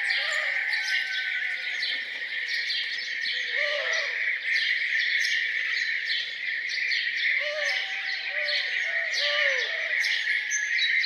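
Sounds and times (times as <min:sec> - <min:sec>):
songbirds chirping: 0:00.0 - 0:09.2.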